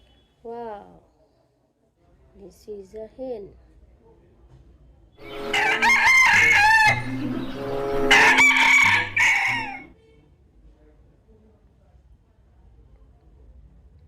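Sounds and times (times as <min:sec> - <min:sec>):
chicken calling: 0:05.2 - 0:09.9.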